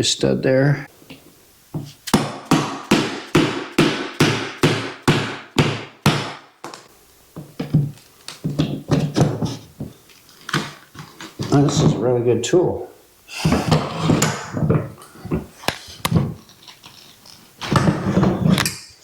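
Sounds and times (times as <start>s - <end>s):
hammer striking wedge tool: 2.1s - 6.4s.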